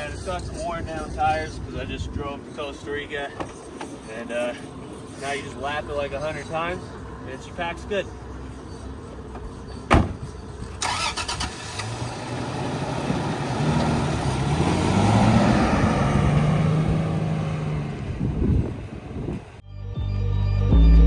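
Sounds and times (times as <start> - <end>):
pickup truck engine revving: 10.8 - 19.6.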